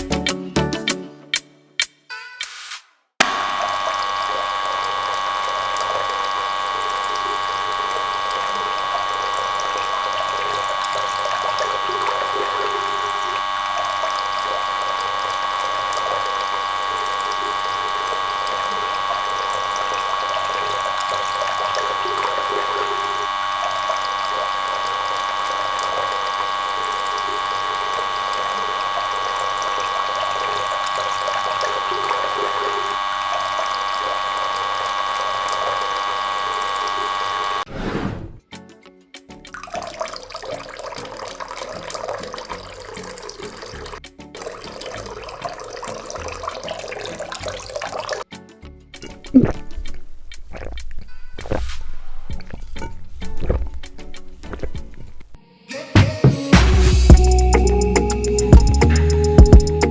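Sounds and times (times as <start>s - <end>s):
small electric motor whining: 3.2s - 37.7s, 40.6s - 44.0s, 49.0s - 55.4s.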